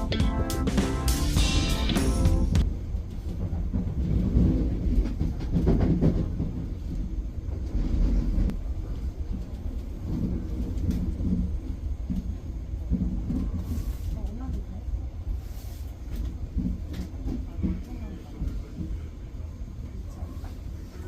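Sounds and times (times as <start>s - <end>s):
train rumbling on rails: 0.0s - 21.0s
train clicks and clatter: 2.6s - 21.0s.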